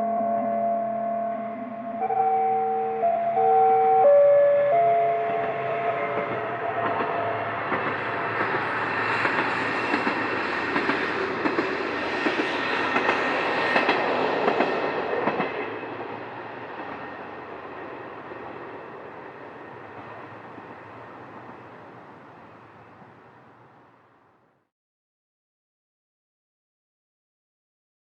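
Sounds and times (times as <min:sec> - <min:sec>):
diesel railcar passing: 0:00.0 - 0:24.5
wheels clicking over rail joints: 0:06.2 - 0:23.9.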